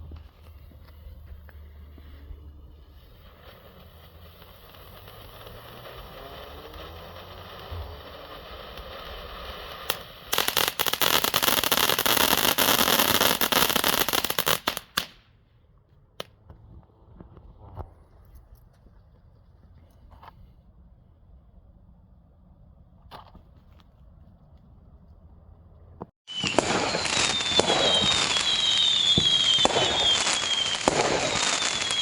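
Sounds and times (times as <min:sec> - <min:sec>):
intense crackling: 0:00.1 - 0:13.8
firework fountain hissing: 0:00.3 - 0:15.2, 0:26.3 - 0:32.0.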